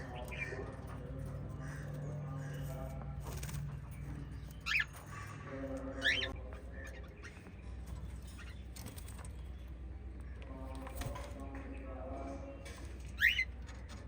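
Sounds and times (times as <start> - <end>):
parrots chirping: 4.2 - 7.6.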